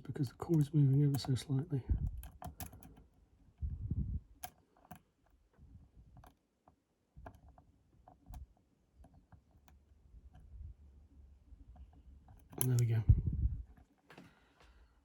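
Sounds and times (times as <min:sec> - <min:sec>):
lock pick clicks and scrapes: 0:02.0 - 0:03.1
low handling rumble: 0:12.8 - 0:13.7.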